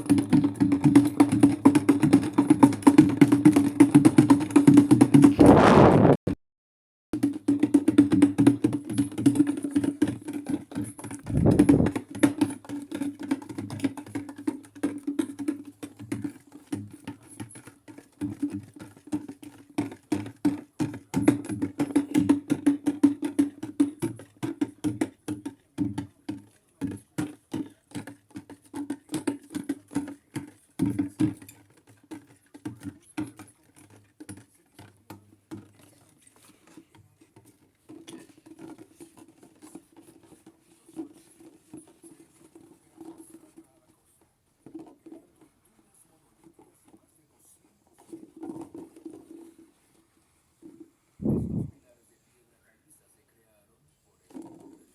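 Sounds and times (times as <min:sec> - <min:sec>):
rapid clicking and patter: 0:00.0 - 0:05.9, 0:07.2 - 0:25.3
heavy thump: 0:11.3 - 0:11.9.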